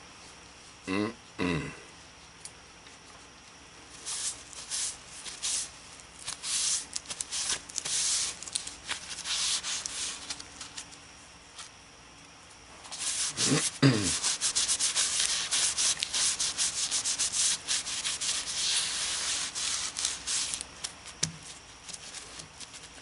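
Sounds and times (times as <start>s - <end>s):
cloth rubbing spinning bowl: 12.8s - 20.6s.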